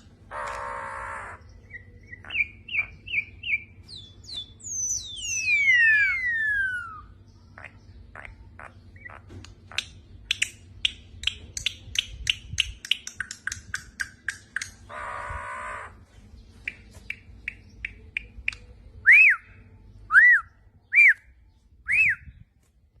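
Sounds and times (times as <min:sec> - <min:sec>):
bird chirping: 0:00.0 - 0:22.5
harsh buzzy bird call: 0:00.3 - 0:03.6, 0:04.6 - 0:09.3, 0:14.8 - 0:16.1
bird whistled notes: 0:04.4 - 0:07.1.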